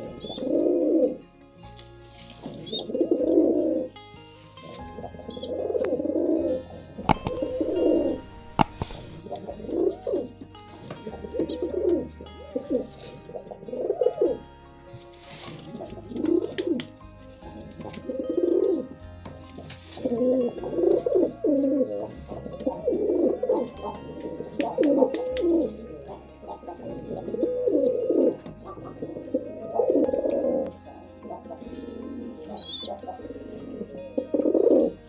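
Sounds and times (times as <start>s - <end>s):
pigeons cooing: 0.0s - 1.2s, 2.4s - 3.9s, 4.7s - 14.4s, 15.4s - 16.9s, 17.7s - 18.9s, 19.6s - 35.0s
sharp clicks: 7.1s - 9.2s.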